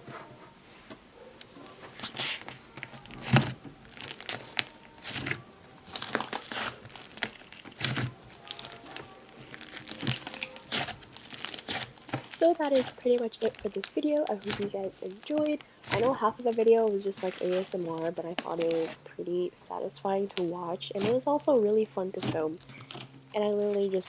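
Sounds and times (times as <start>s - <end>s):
slime crackling and popping: 2.0s - 19.0s.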